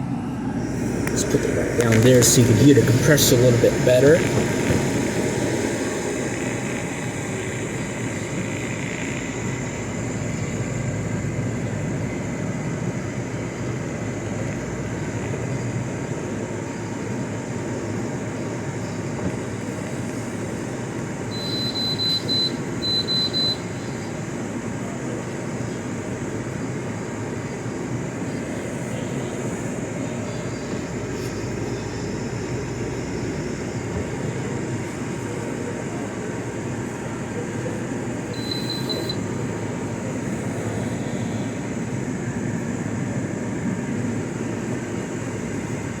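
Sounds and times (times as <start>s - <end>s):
dehumidifier fan and compressor: 0.0s - 46.0s
short high-pitched electronic beeps: 38.4s - 39.3s.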